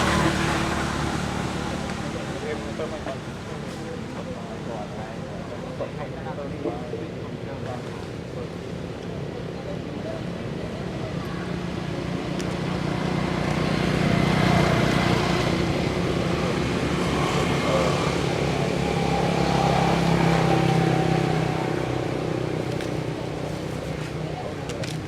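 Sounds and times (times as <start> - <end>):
engine humming: 0.0 - 5.3.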